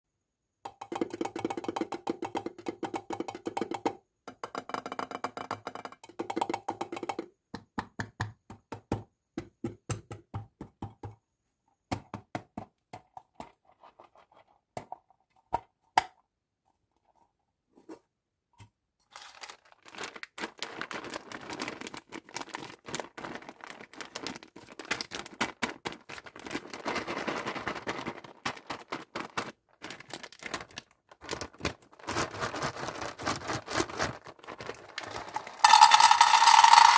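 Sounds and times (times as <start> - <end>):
taps and knocks on packaging: 0.7 - 11.2
wrapper crinkling and rustling: 19.0 - 35.6.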